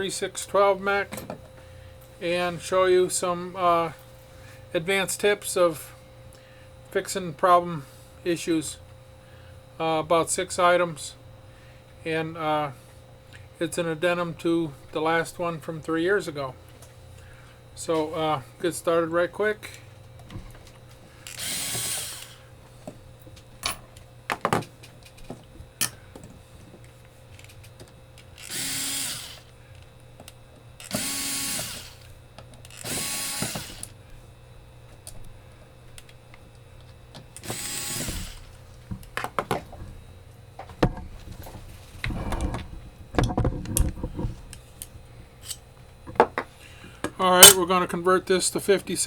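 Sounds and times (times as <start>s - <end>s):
power drill bursts: 21.3s - 22.4s, 28.4s - 29.5s, 30.8s - 32.1s, 32.7s - 33.9s, 37.4s - 38.5s, 47.4s - 47.6s.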